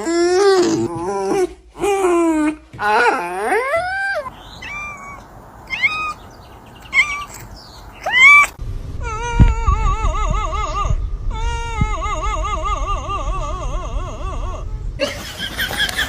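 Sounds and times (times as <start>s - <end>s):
cat meowing: 3.8s - 10.8s
low thumps: 8.6s - 15.0s.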